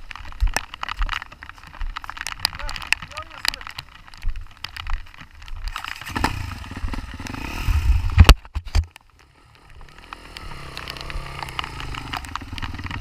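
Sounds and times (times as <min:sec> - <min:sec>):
motorcycle engine revving: 0:05.7 - 0:13.0.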